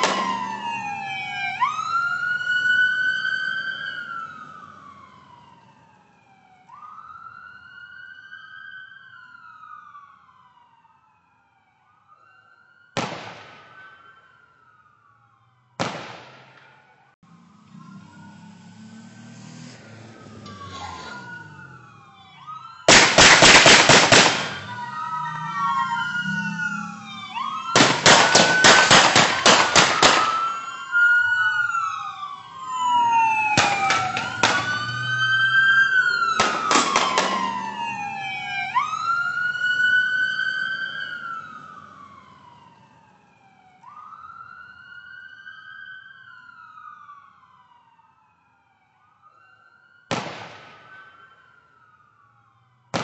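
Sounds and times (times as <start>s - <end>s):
police sirens wailing: 0.0s - 53.0s
gunfire volleys: 13.0s - 14.0s, 15.8s - 16.8s, 22.9s - 24.7s, 27.7s - 30.5s, 36.4s - 37.5s, 50.1s - 51.2s.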